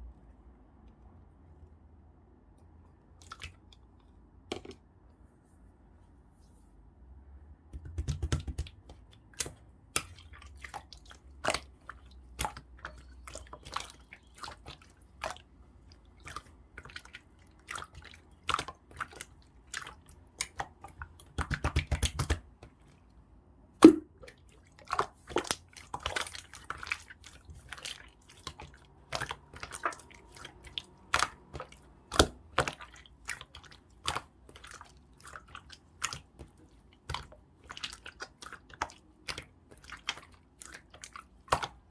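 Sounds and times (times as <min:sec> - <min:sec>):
slime clicking and popping: 0:21.4 - 0:22.4.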